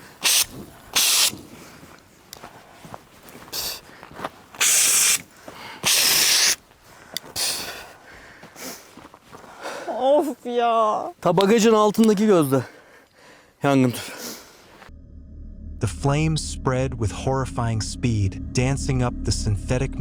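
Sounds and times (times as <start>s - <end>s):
short loud hissing bursts: 0.0s - 1.4s, 4.6s - 5.2s, 5.8s - 6.6s.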